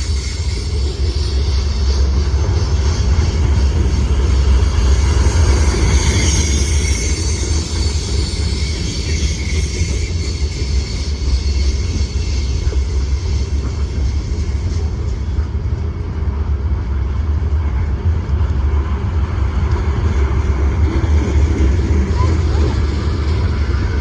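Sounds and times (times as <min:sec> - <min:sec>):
faint high wheel squeal: 0:00.0 - 0:15.5, 0:22.0 - 0:23.8
train wheels rumbling on rail: 0:00.0 - 0:24.0.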